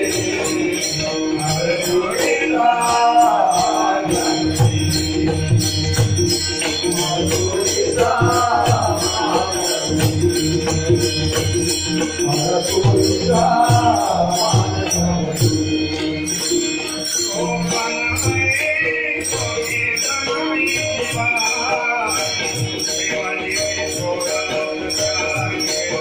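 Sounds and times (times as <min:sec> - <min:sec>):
group singing: 0:00.0 - 0:16.4
rhythmic drum beat: 0:00.0 - 0:26.0
small cymbals jingling: 0:00.0 - 0:26.0.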